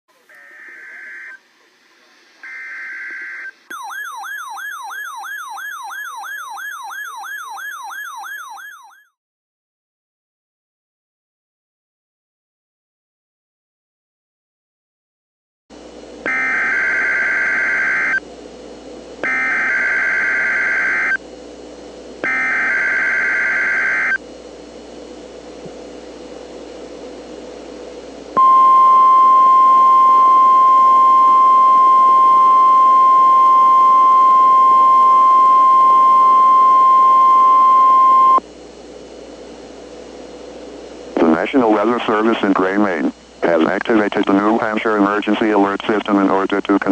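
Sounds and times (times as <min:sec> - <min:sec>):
radio hiss: 0:00.1 - 0:03.7, 0:41.2 - 0:46.9
digital data tone bursts: 0:02.4 - 0:08.9
steady attention tone: 0:02.4 - 0:09.0, 0:28.4 - 0:38.4.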